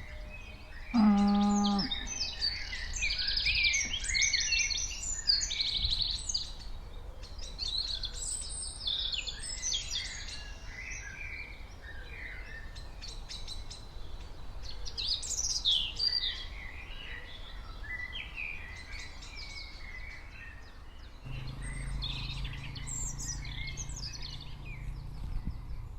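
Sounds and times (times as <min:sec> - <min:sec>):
small birds chirping: 0:00.0 - 0:25.9
low steady hum: 0:21.3 - 0:25.9
low steady rumble: 0:21.3 - 0:25.9.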